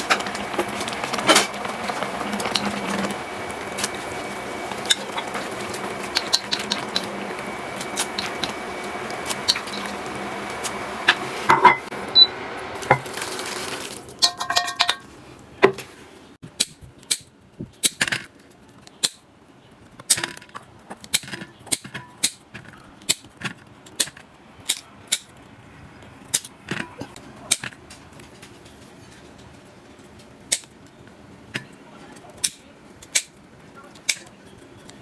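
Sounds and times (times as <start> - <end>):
utensils clinking against dishes: 14.2 - 15.1.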